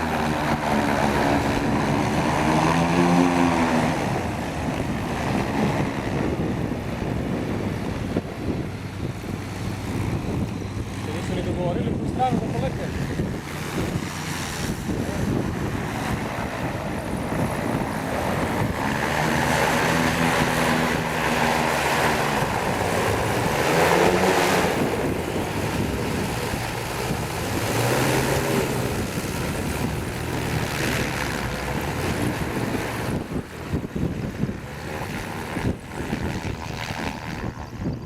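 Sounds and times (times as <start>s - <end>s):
engine running: 0.0s - 38.0s
wind buffeting microphone: 0.0s - 38.0s
water: 16.2s - 37.9s.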